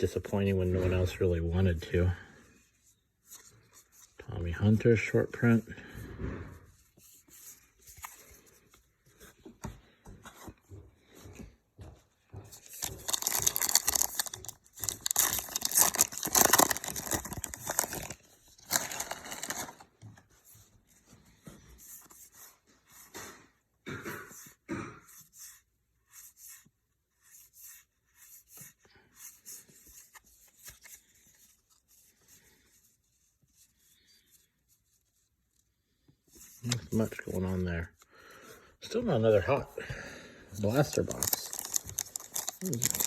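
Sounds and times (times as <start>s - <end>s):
cards rustling: 6.8s - 10.6s, 12.5s - 22.4s, 27.4s - 35.2s, 36.3s - 39.8s, 40.5s - 43.0s
wrapper tearing and crinkling: 12.8s - 19.8s, 40.6s - 43.0s.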